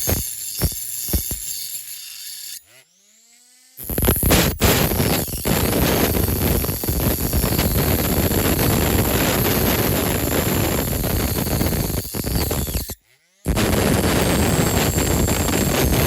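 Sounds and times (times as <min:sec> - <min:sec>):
power tool grinding metal: 0:00.0 - 0:16.0.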